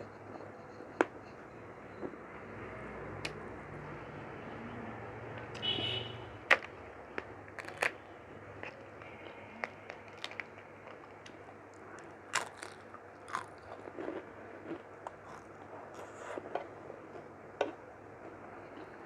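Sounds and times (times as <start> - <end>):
close chewing and mouth smacks: 6.5 - 8.0, 8.6 - 19.0.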